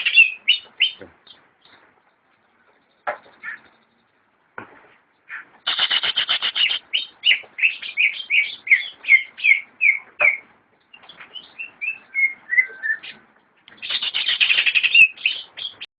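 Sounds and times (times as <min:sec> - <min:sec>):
bird singing whistles and runs: 0:11.0 - 0:13.2.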